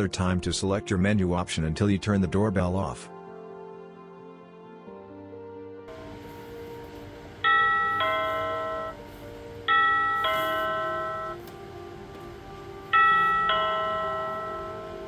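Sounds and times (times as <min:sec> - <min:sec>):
two-note doorbell chime: 0:05.9 - 0:15.0.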